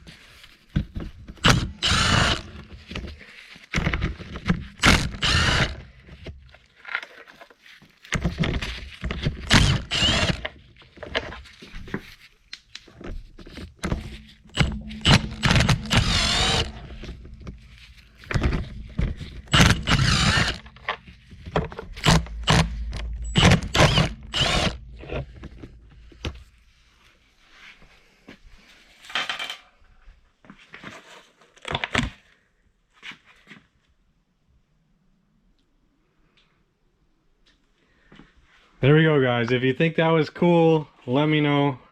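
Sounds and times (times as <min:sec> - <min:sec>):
impact driver hammering: 0:01.4 - 0:02.6, 0:04.8 - 0:05.8, 0:09.4 - 0:10.5, 0:13.8 - 0:17.6, 0:18.3 - 0:21.0, 0:22.0 - 0:26.4.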